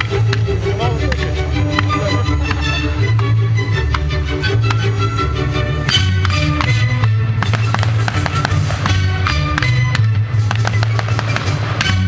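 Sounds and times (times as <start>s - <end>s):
firework cracks: 6.2s - 12.0s.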